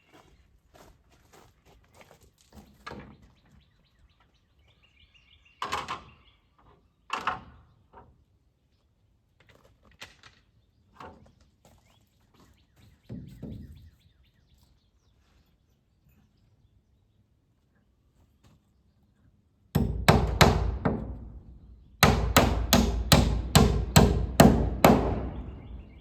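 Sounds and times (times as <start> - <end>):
bird chirping: 3.2 - 7.9, 10.6 - 17.3, 25.1 - 26.0
hammer striking nails into wood: 19.8 - 21.3, 22.0 - 25.9.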